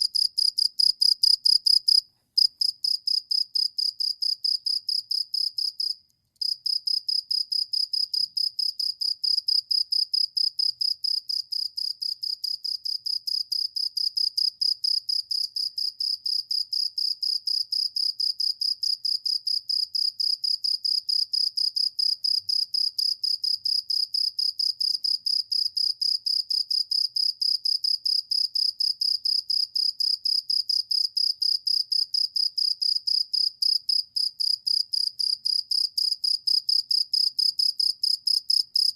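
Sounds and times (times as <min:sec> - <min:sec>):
cricket chirping: 0:00.0 - 0:38.9.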